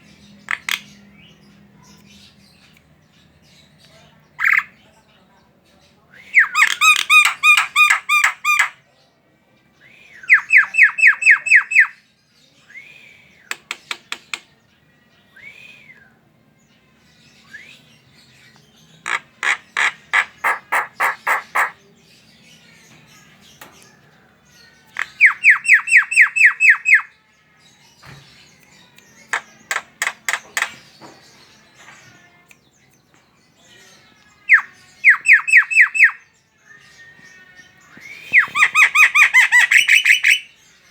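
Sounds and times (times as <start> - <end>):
myna bird harsh chattering: 6.4 - 8.8, 19.0 - 21.8, 38.3 - 40.5.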